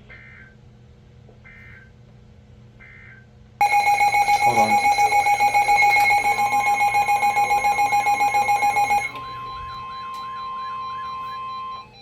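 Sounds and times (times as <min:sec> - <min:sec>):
steady alert tone: 0:03.6 - 0:09.2
rapid beeping alarm: 0:03.6 - 0:12.0.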